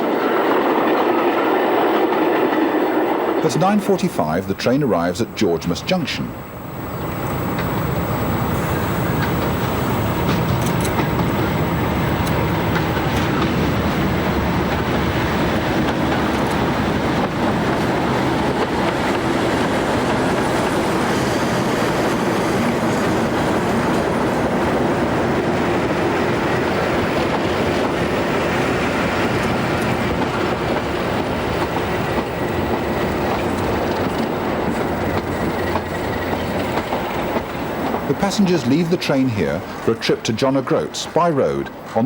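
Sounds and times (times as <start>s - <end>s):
wheels on rails: 6.7s - 40.2s.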